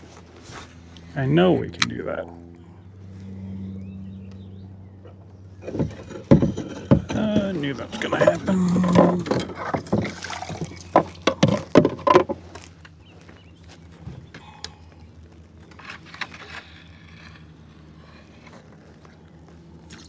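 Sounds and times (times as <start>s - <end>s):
sharp knocks and clatters: 5.6s - 7.2s.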